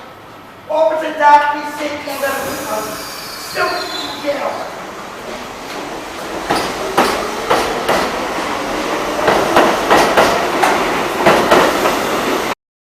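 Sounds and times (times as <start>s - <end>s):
train wheels clacking over rail joints: 5.7s - 8.2s, 8.9s - 12.4s.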